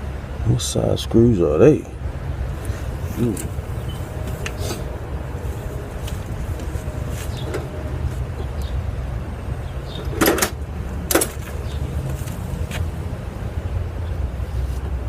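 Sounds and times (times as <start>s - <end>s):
hand tools and metal clinking: 9.9s - 12.4s.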